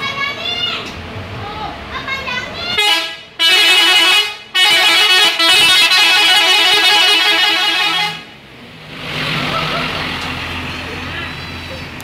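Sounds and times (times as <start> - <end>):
multi-tone bus horn melody: 2.8 - 8.4.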